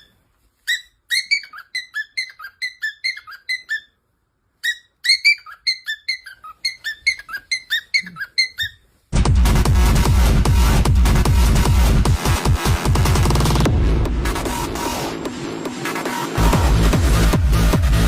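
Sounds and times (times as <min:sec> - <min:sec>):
bird whistling high chirps: 0:00.0 - 0:04.0, 0:04.6 - 0:08.8.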